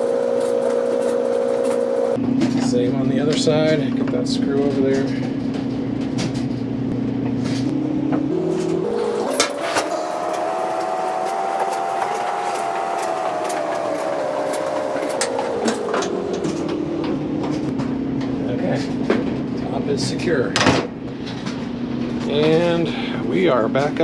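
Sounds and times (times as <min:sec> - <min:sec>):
clothes dryer motor hum: 0:00.0 - 0:02.2, 0:08.3 - 0:17.8.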